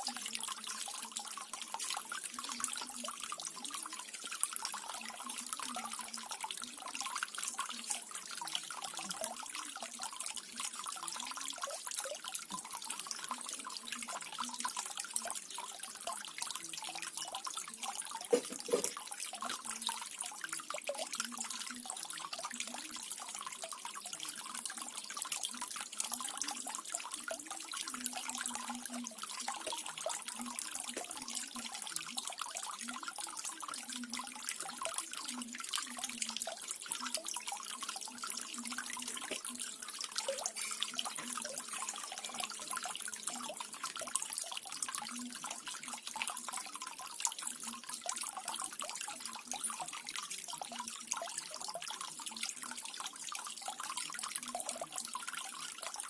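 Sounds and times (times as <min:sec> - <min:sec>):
water trickling and dripping: 0:00.0 - 0:56.0
water splashing: 0:18.3 - 0:19.0.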